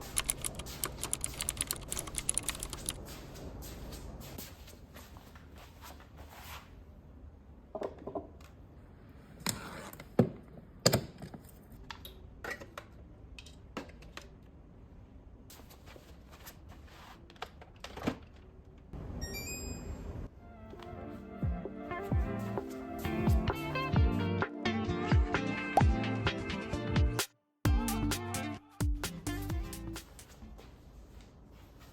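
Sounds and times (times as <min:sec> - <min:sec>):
keyboard-like clicks: 0:00.0 - 0:03.0.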